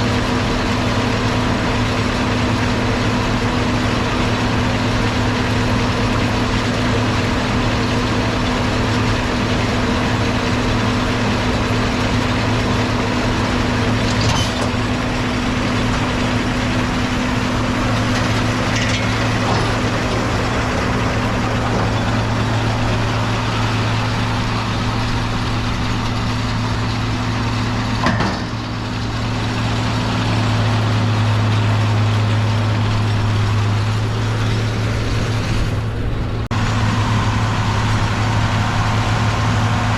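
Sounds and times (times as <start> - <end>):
tractor diesel engine running: 0.0 - 39.9
machinery clicks and knocks: 27.9 - 28.7.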